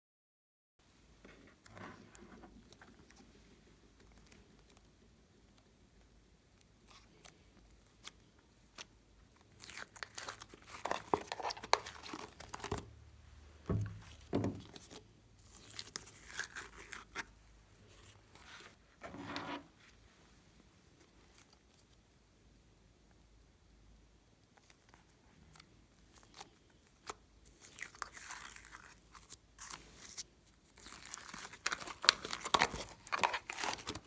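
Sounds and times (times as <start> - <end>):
crinkly material crackling: 6.8 - 12.9, 13.9 - 20.2, 24.6 - 34.0.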